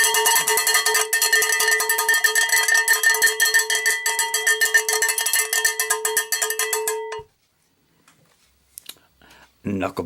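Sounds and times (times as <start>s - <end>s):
cowbell strikes: 0.0s - 7.3s.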